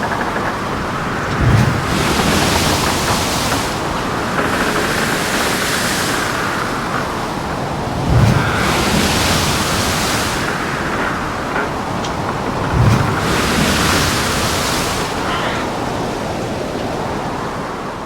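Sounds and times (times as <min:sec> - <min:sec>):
waves and wind rushing: 0:00.0 - 0:18.0
spray washing: 0:01.4 - 0:11.0.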